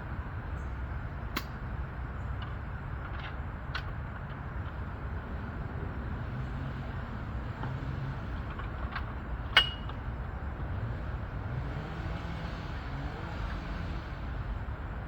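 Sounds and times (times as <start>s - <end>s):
sharp metallic clink: 9.6s - 9.9s.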